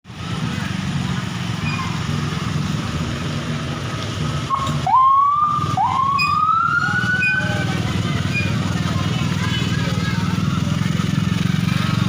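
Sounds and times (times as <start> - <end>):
low vehicle engine rumble: 0.1 - 12.0
rising siren whoops: 4.5 - 7.6.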